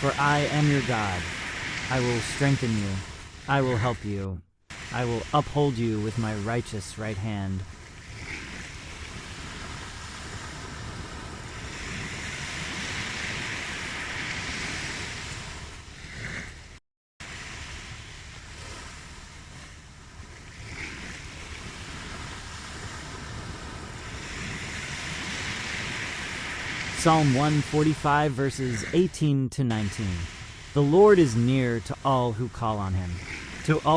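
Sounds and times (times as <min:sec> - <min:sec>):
ocean waves washing onto shore: 0:00.0 - 0:33.9.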